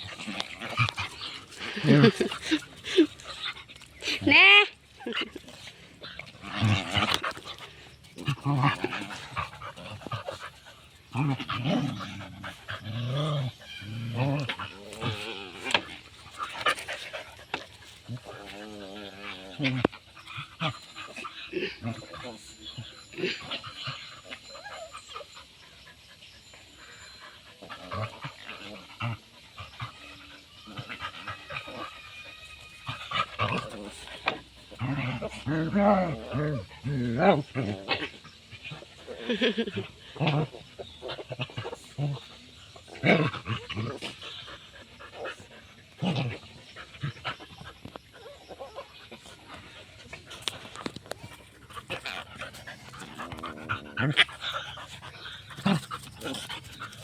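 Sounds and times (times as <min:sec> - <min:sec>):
dog panting: 0:40.8 - 0:57.0.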